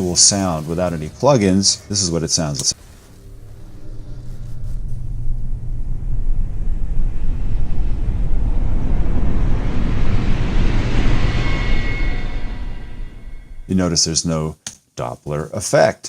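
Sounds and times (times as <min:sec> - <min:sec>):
faint steady whine: 0:00.0 - 0:14.2
reversed rumbling whoosh: 0:00.6 - 0:13.9.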